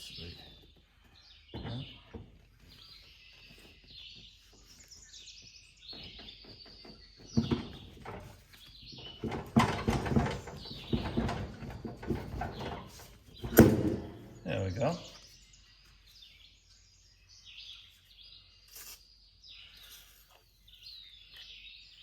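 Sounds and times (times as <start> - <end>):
birds chirping: 0.0 - 22.0
metal clunks and knocks: 6.0 - 14.5.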